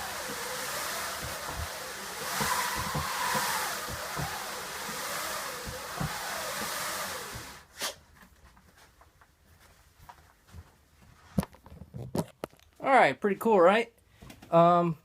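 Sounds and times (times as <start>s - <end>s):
wind machine whooshing: 0.0s - 7.6s
knock: 2.4s - 4.4s.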